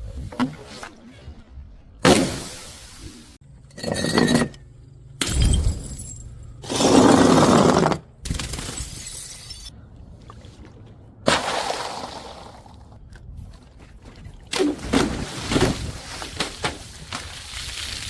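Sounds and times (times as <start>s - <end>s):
glass bottles shattering: 8.4s - 9.7s.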